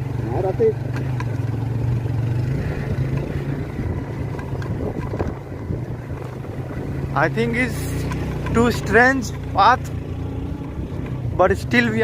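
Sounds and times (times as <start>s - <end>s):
motorcycle engine running: 0.0s - 12.0s
wind on microphone: 2.5s - 7.0s.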